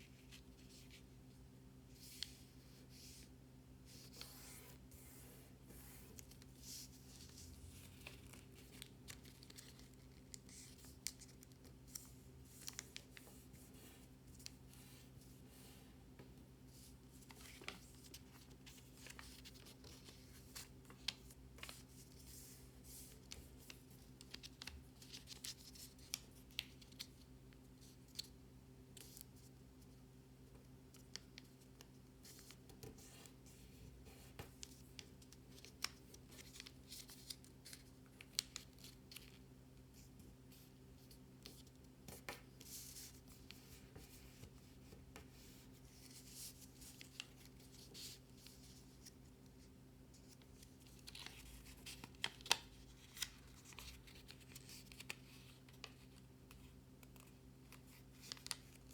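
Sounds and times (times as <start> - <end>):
paper being folded: 3.9 - 15.0, 16.7 - 27.1, 50.1 - 58.9.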